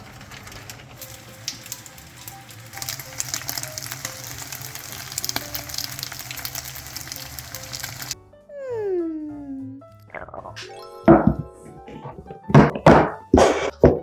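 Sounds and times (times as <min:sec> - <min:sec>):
dumplings sizzling in oil: 0:00.0 - 0:08.2
faint background music: 0:00.1 - 0:14.0.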